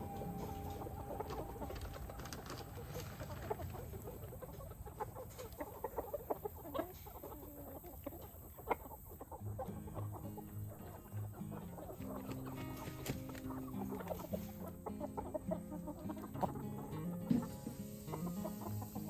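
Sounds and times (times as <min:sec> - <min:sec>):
background music: 0:00.0 - 0:02.3, 0:09.4 - 0:19.0
chickens clucking: 0:00.0 - 0:19.0.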